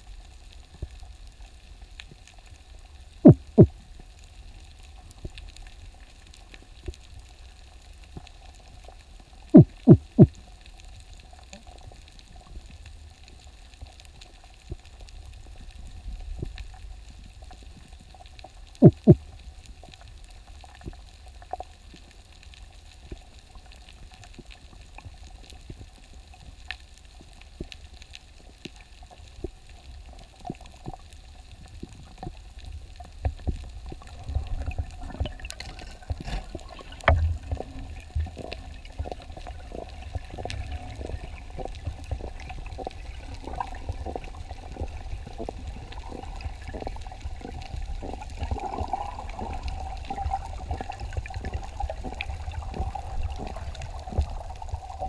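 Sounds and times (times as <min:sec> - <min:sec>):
low underwater rumble: 0:00.0 - 0:55.0
sharp clicks and ticks: 0:03.2 - 0:03.7, 0:09.6 - 0:10.3, 0:18.8 - 0:19.2.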